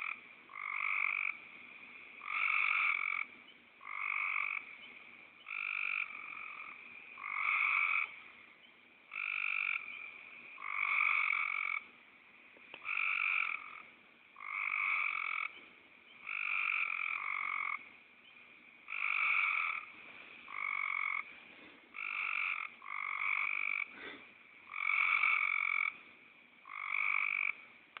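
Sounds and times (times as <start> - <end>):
frog snoring call: 2.2 - 4.8, 9.1 - 11.8, 14.4 - 15.6, 18.9 - 19.9, 24.7 - 26.0, 26.7 - 27.6.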